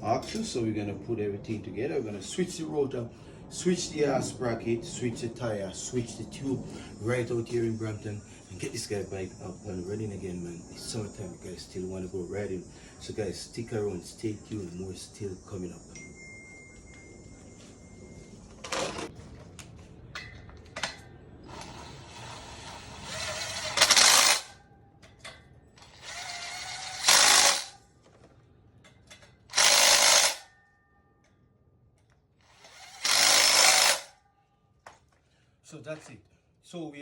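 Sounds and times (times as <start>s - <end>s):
power tool running: 21.5s - 24.5s, 25.8s - 27.8s, 29.5s - 30.4s, 32.5s - 34.1s.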